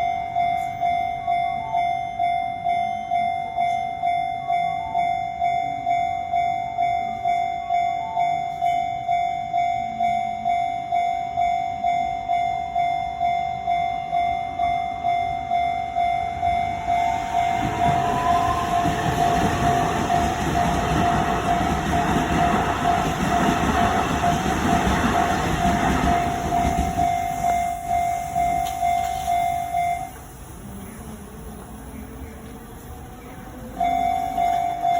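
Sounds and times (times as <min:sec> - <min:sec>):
electric train whine: 0:00.0 - 0:34.9
railroad crossing bell ringing: 0:00.0 - 0:34.9
train wheels rumbling on rails: 0:15.9 - 0:34.9.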